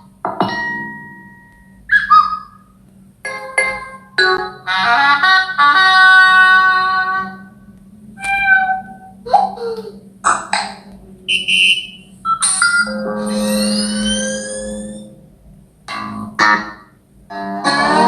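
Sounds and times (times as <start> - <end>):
two-note chime: 0.4 - 1.9, 12.4 - 15.3
struck chime ringing: 0.4 - 2.6, 10.2 - 15.4
phone notification tones: 11.3 - 15.2
melodic jingle: 12.6 - 15.2.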